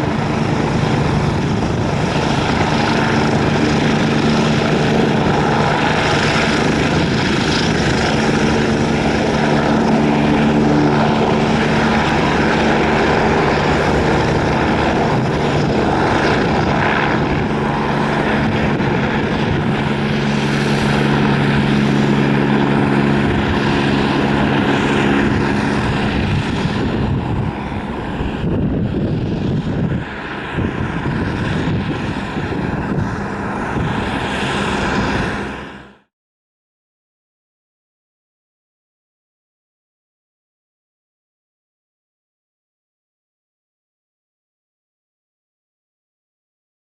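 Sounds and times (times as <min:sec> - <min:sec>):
helicopter turbines and rotors: 0:00.0 - 0:36.1.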